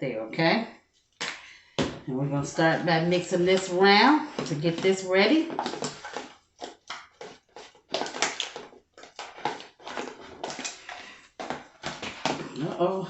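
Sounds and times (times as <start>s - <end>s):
shrimp stirred in a bowl: 3.2s - 12.8s.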